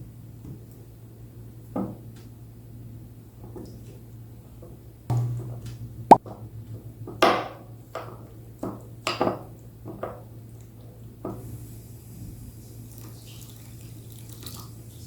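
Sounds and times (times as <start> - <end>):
low steady hum: 5.1 - 6.8.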